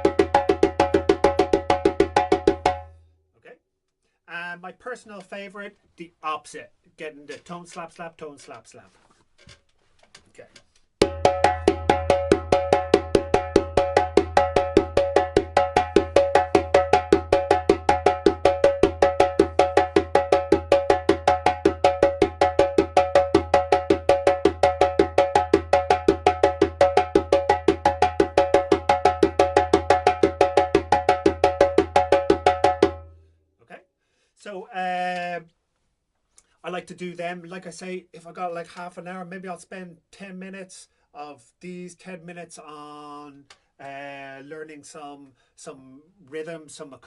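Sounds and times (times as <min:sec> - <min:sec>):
djembe tones and slaps: 0:00.0 - 0:02.9, 0:11.0 - 0:33.1.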